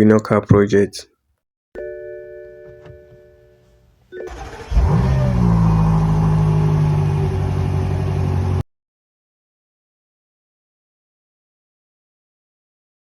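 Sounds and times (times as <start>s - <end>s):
car engine starting and idling: 4.2s - 8.6s.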